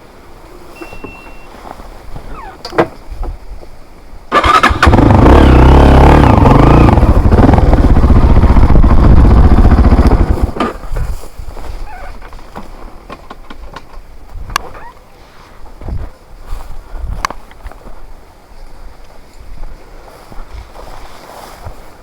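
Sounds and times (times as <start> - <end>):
loud engine running: 4.4 - 10.6.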